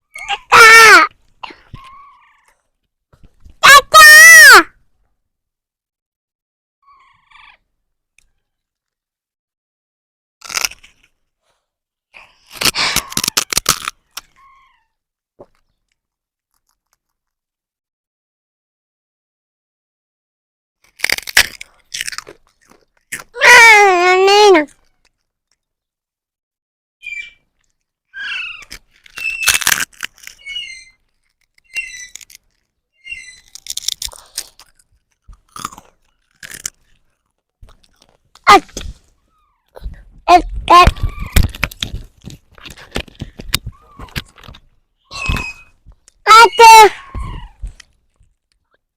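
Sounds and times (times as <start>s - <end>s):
crackling and crunching: 10.4s - 11.3s, 12.3s - 14.4s, 15.4s - 17.4s, 20.8s - 25.7s, 27.4s - 39.9s, 40.6s - 46.4s, 47.2s - 48.8s
baby parrots squawking: 28.2s - 28.7s
sharp crackles: 28.6s - 37.1s.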